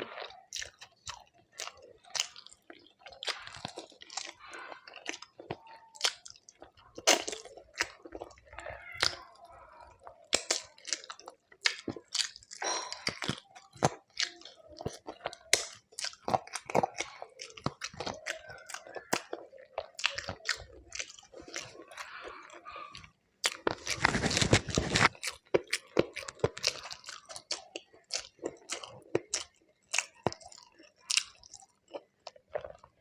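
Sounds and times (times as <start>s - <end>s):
person chewing food: 0.0s - 33.0s.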